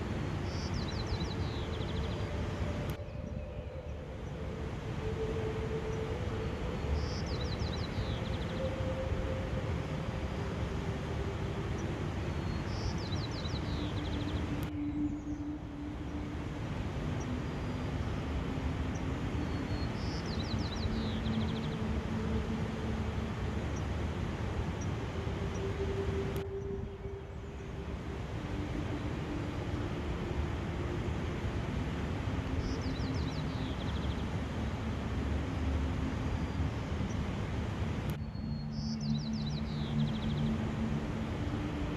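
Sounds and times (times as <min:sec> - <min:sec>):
outdoor rushing ambience: 0:00.0 - 0:41.9
small bird singing: 0:00.4 - 0:24.0, 0:32.4 - 0:35.0, 0:38.1 - 0:41.9.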